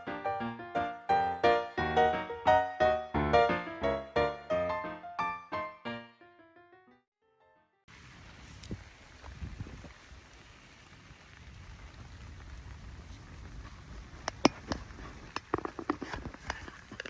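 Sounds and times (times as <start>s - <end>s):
rain hiss: 7.9s - 17.0s
sharp drips and taps: 14.2s - 17.0s.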